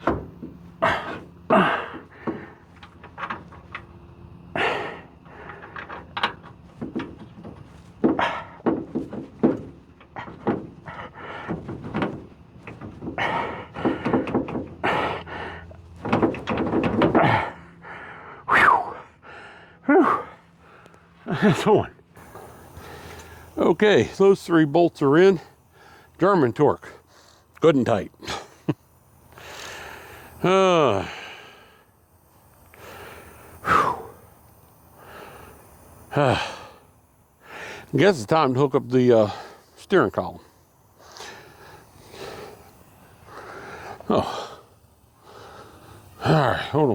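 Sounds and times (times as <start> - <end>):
hand tools clattering on metal bolts: 0.0 - 4.0, 4.6 - 17.6.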